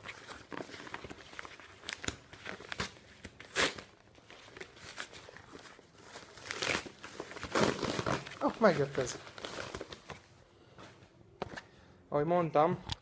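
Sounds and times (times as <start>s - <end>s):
packaging crinkling and tearing: 0.0s - 10.3s.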